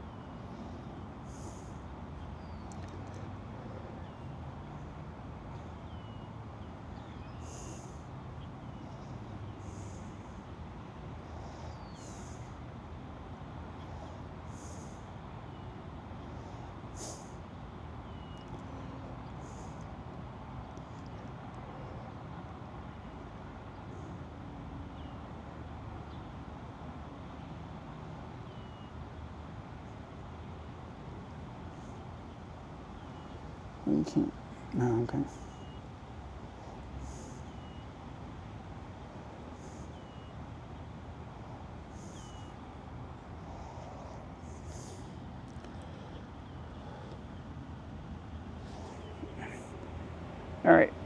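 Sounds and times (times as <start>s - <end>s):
small bird chirping faintly: 0.0s - 12.7s, 30.6s - 49.9s
road traffic noise: 0.0s - 51.0s.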